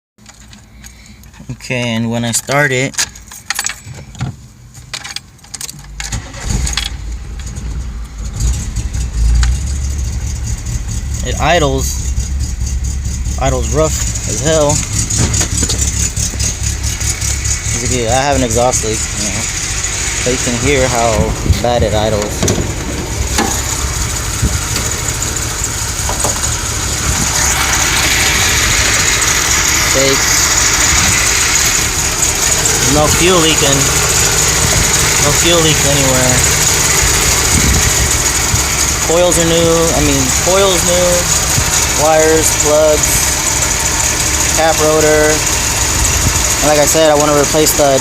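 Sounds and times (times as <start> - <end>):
ignition keys clicking and jingling: 0.2 - 10.2, 13.5 - 27.4
car engine cranking and idling roughly: 0.2 - 48.0.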